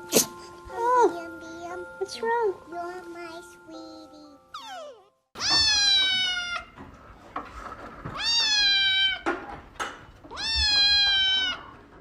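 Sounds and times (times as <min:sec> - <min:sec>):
cat meowing: 0:04.6 - 0:06.8, 0:08.1 - 0:09.3, 0:10.3 - 0:11.8.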